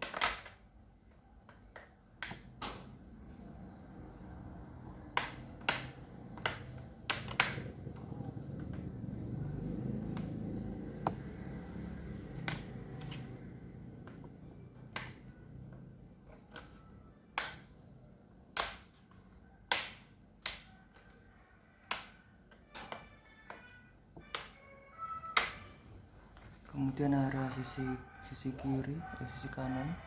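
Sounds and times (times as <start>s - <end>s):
plastic clips popping loose: 0.0s - 0.7s, 5.1s - 7.7s, 18.5s - 19.0s.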